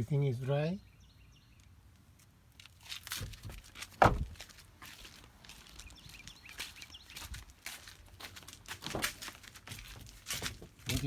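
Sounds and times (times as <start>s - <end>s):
sharp thump: 4.0s - 4.4s.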